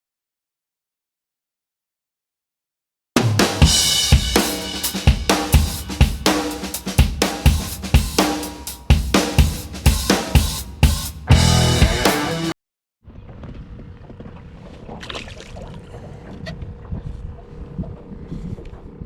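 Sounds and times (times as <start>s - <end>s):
music with drum-kit beat: 3.2s - 12.6s.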